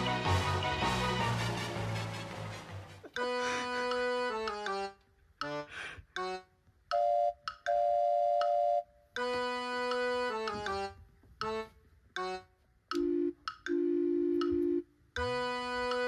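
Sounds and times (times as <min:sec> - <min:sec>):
light electronic tune: 0:06.9 - 0:10.7, 0:12.9 - 0:16.0.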